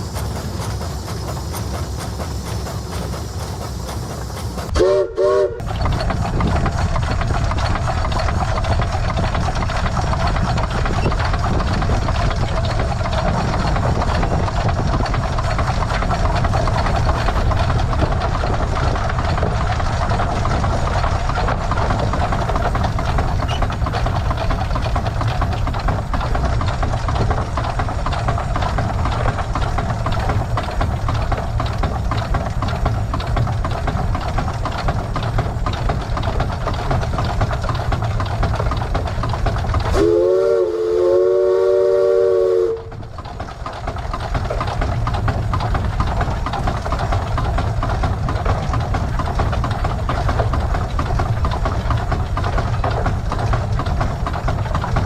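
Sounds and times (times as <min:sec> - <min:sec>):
steam engine running: 0:00.0 - 0:55.0
steam whistle toot: 0:04.7 - 0:05.6, 0:39.9 - 0:42.9.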